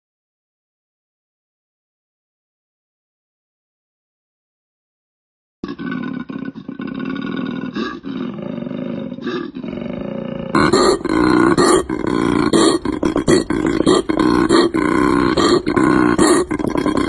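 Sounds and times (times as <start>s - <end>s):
koala bellowing: 10.5s - 17.0s.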